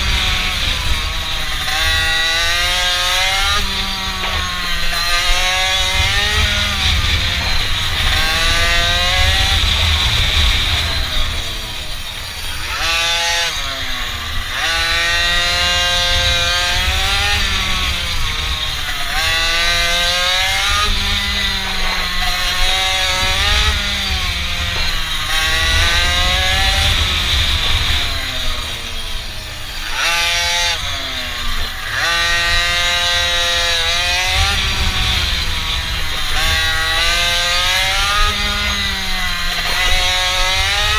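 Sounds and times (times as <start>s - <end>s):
mini bike engine revving: 0.0s - 40.9s.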